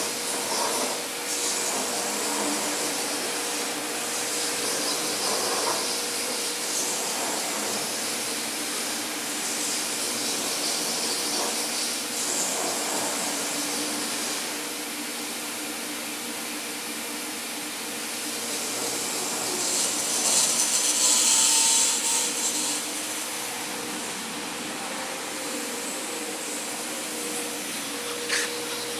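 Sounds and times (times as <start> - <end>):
cnc router running: 0.0 - 28.9.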